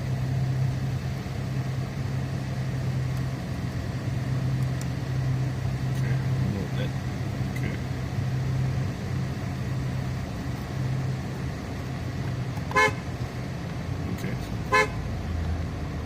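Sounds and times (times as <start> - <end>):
steady low hum: 0.0 - 15.3
car horn toots: 12.7 - 13.1, 14.6 - 15.0.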